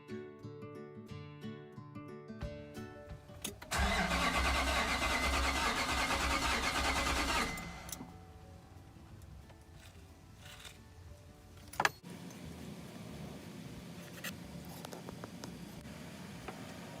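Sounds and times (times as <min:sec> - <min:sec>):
starter motor click: 0:03.4 - 0:08.1
starter motor cranking engine: 0:03.7 - 0:08.0.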